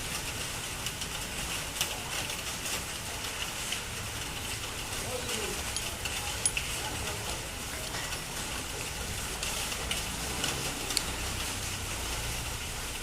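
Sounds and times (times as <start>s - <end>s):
metal parts clicking: 5.4s - 7.2s.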